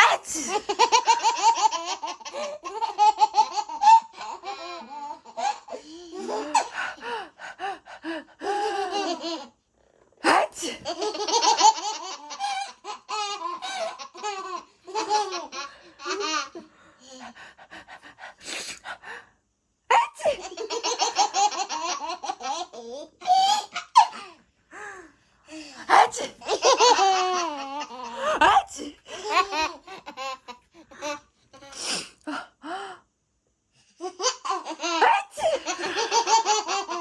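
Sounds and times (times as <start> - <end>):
woman sneezing: 19.9 - 20.4.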